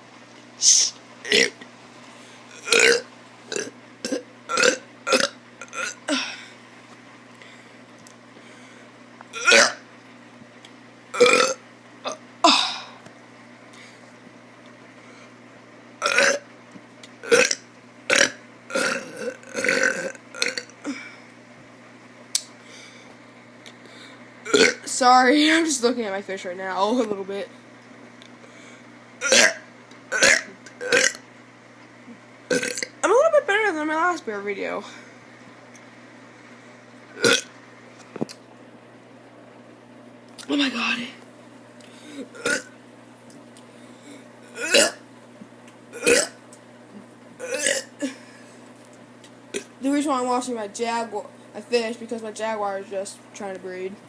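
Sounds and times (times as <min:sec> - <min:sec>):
child burping: 0:01.3 - 0:01.6, 0:02.6 - 0:06.4, 0:09.4 - 0:09.8, 0:11.2 - 0:13.0, 0:16.0 - 0:16.4, 0:17.2 - 0:21.1, 0:24.5 - 0:24.9, 0:29.2 - 0:31.2, 0:32.5 - 0:32.9, 0:37.2 - 0:37.5, 0:42.2 - 0:42.7, 0:44.6 - 0:45.0, 0:46.0 - 0:46.4, 0:47.4 - 0:48.2.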